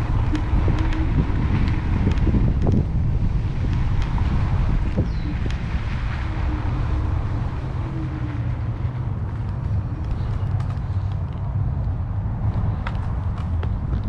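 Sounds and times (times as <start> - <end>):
wind buffeting microphone: 0.0 - 14.0
faint ticks: 0.1 - 2.9.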